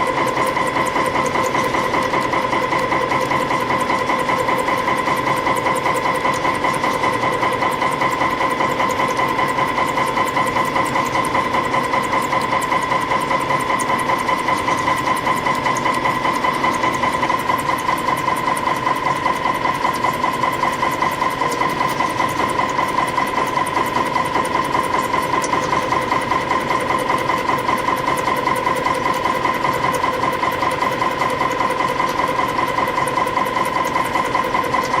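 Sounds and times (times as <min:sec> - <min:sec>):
spring coiling machine running: 0:00.0 - 0:35.0.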